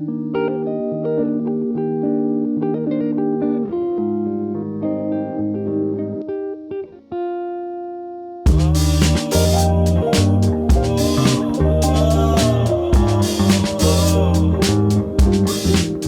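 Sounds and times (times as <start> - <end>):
plucked guitar music: 0.0 - 16.0
bass line: 8.5 - 16.0.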